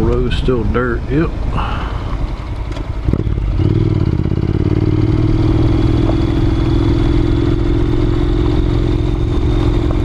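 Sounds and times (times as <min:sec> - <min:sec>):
motorcycle engine running: 0:01.3 - 0:10.0.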